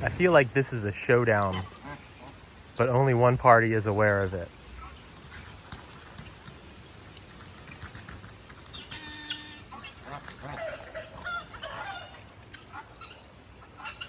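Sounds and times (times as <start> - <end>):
geese honking: 0.0 - 5.6, 8.7 - 14.0.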